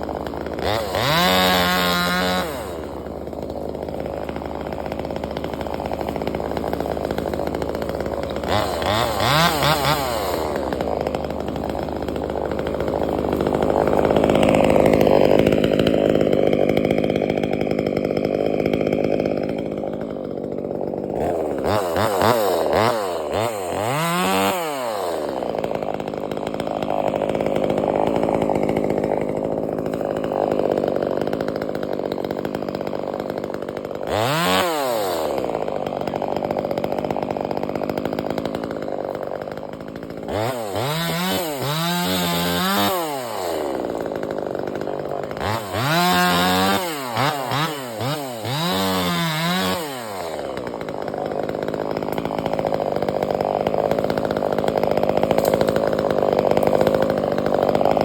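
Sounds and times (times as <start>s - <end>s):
chainsaw engine revving: 0.0s - 58.0s.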